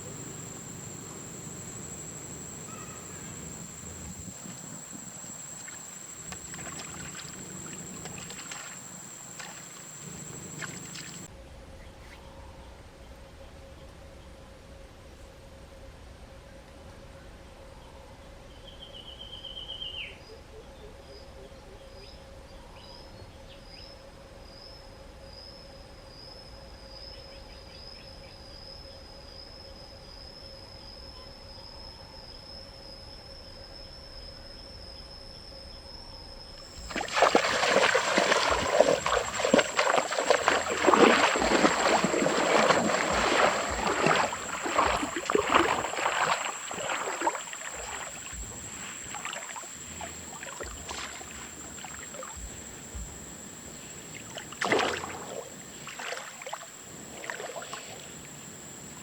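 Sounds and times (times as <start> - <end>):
high insect drone: 0.0 - 11.4, 28.6 - 59.0
water splashing and sloshing: 1.3 - 11.3, 36.7 - 59.0.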